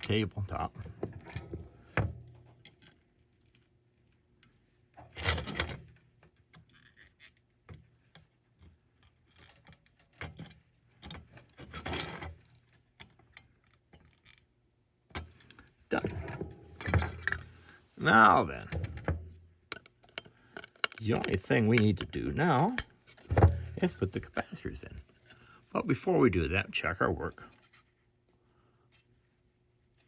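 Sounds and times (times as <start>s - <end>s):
small parts clicking and rattling: 0.0s - 17.7s, 18.6s - 24.2s.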